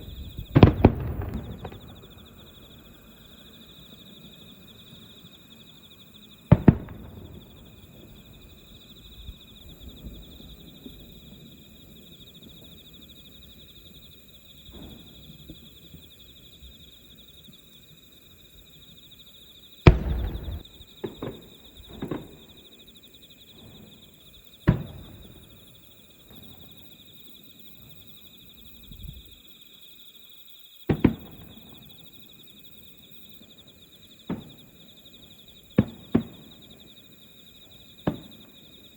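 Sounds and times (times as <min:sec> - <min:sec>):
small firework pops: 0:00.0 - 0:02.6, 0:06.5 - 0:07.9, 0:14.7 - 0:16.1, 0:19.8 - 0:22.4, 0:24.6 - 0:25.7, 0:30.9 - 0:31.9, 0:34.2 - 0:34.6, 0:35.7 - 0:36.6, 0:38.0 - 0:38.6
distant fireworks booms: 0:00.0 - 0:17.6, 0:19.8 - 0:27.0, 0:30.9 - 0:32.3, 0:32.9 - 0:38.9
insects trilling: 0:00.0 - 0:38.9.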